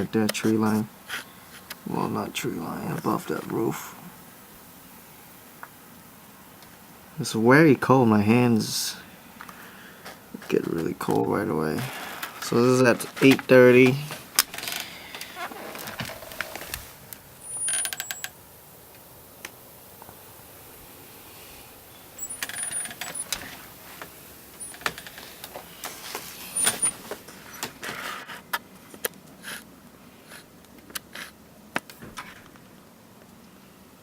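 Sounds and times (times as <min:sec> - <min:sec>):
handling clicks and rustles: 0:09.4 - 0:20.3, 0:22.2 - 0:29.7.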